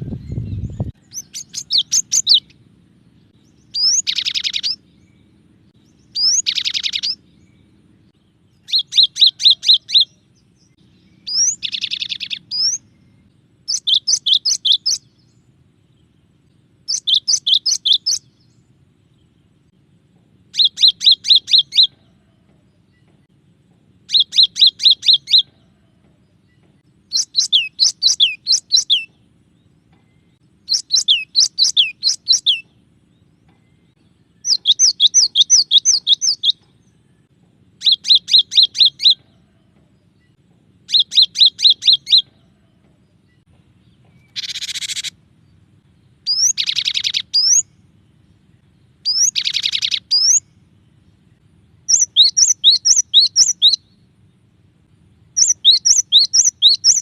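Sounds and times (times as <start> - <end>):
bird singing whistled notes: 0.0 - 19.6, 20.5 - 23.2, 24.0 - 54.4, 55.1 - 57.0
harsh buzzy bird call: 0.8 - 15.3, 16.8 - 18.6, 20.5 - 22.9, 24.0 - 26.4, 27.0 - 29.3, 30.2 - 32.8, 34.3 - 37.0, 37.8 - 42.7, 44.2 - 45.4, 46.2 - 47.9, 49.0 - 50.6, 51.8 - 54.1, 55.4 - 57.0.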